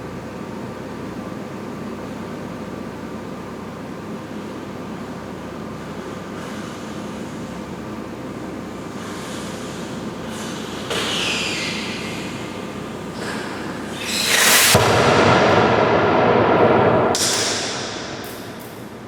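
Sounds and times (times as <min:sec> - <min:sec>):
hiss: 0:08.8 - 0:16.5
rushing burst of flame: 0:14.0 - 0:18.2.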